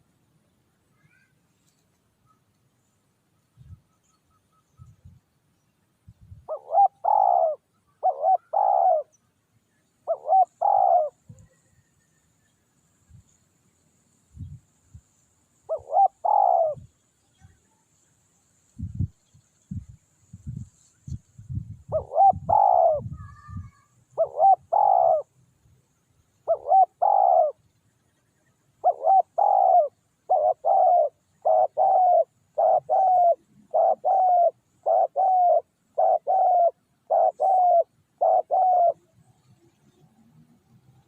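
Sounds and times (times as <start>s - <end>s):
doves cooing: 6.4s - 9.1s, 10.0s - 11.9s, 15.7s - 16.9s, 21.9s - 25.3s, 26.4s - 27.6s, 28.8s - 39.2s.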